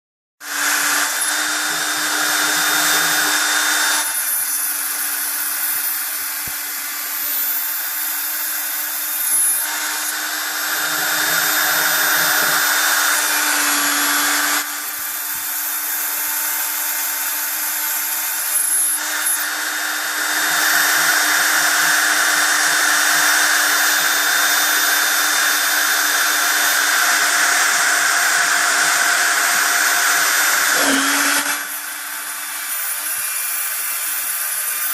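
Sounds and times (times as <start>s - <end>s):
hissing cutting noise: 0.4s - 15.4s
router spindle tone: 0.4s - 34.9s.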